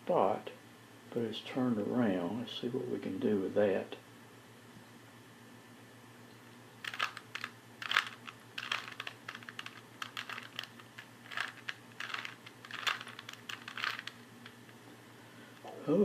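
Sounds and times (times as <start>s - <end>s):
faint steady hum: 0.0s - 16.0s
puzzle cube twisting clicks: 6.8s - 14.6s.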